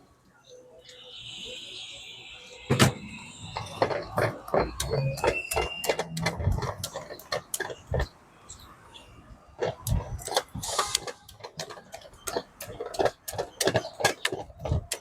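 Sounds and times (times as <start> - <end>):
clicking and knocking: 2.7 - 8.1, 9.6 - 15.0.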